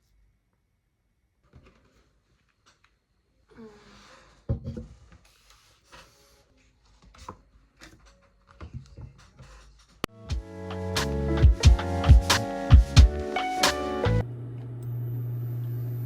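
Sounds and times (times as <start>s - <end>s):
knocks and rustling of handling: 1.4s - 3.0s, 4.3s - 10.1s
background music: 10.1s - 14.2s.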